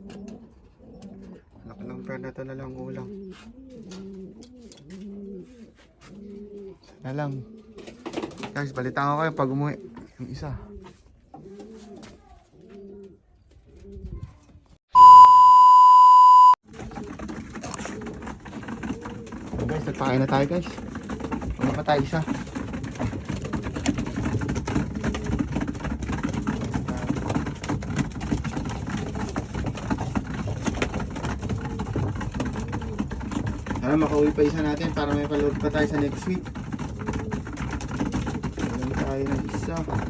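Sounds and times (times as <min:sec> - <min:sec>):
pigeons cooing: 0:00.0 - 0:14.2, 0:16.8 - 0:40.0
pigeons pecking feed: 0:00.0 - 0:14.3, 0:16.6 - 0:40.0
steady electronic beep: 0:14.9 - 0:16.6.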